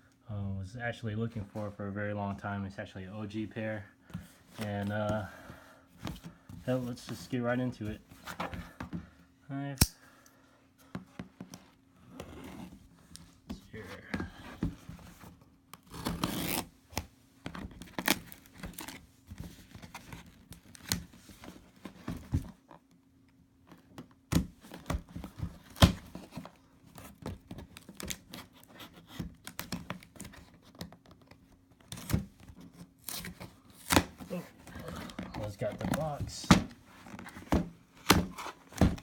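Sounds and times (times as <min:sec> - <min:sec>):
packaging tape tearing: 0:15.8 - 0:16.7.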